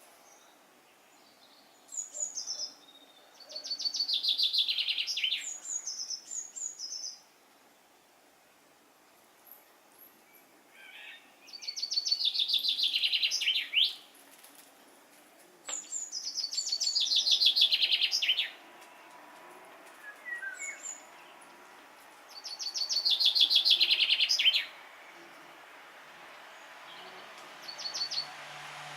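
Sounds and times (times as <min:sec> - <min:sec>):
songbird trilling: 0:22.3 - 0:24.7.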